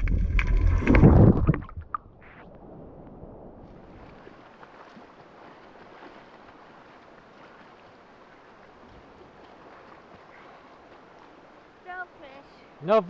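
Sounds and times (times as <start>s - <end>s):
sea water washing: 0.0s - 13.0s.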